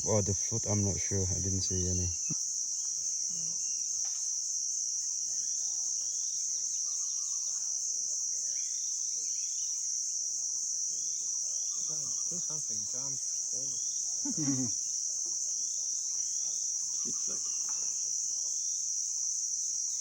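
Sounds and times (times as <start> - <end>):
faint chirps: 0.0 - 4.4, 5.0 - 20.0
high-pitched insect drone: 0.0 - 20.0.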